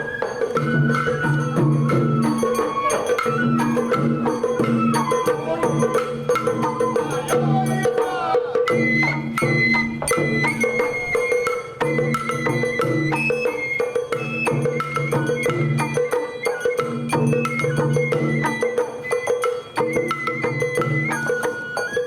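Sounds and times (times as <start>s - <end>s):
drum strikes: 0.6s - 13.3s.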